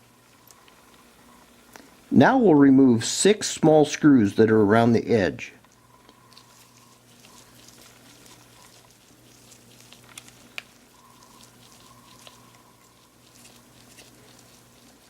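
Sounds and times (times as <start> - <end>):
low hum: 5.6 - 15.0.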